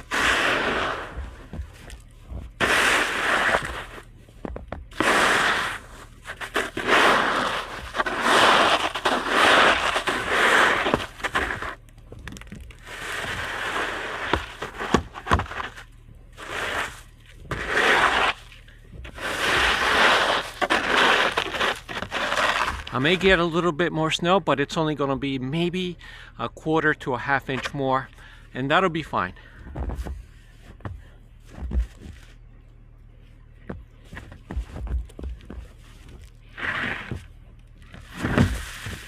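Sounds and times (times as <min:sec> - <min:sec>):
snow scraped off plywood: 0:00.0 - 0:04.1, 0:04.9 - 0:11.8, 0:12.8 - 0:23.4, 0:35.8 - 0:37.3, 0:38.0 - 0:39.0.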